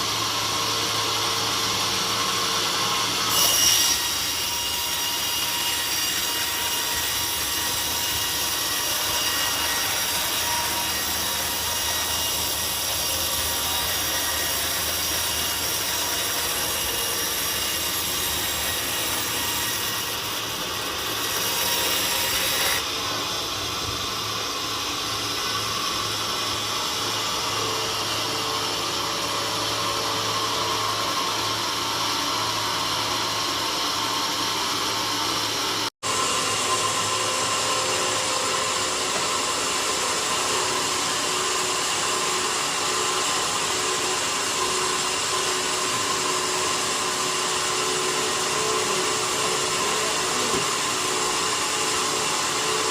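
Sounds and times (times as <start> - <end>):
sawmill saw cutting log: 0.0 - 52.9.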